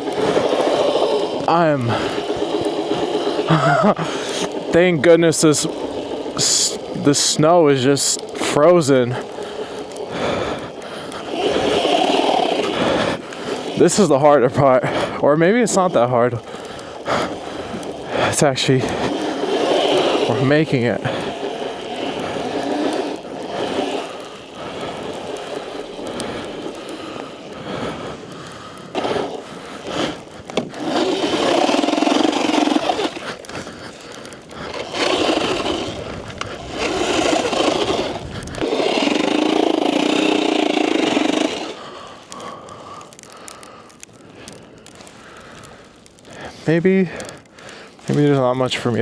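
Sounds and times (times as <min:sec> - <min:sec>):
tyres churning through snow: 0:00.0 - 0:49.0.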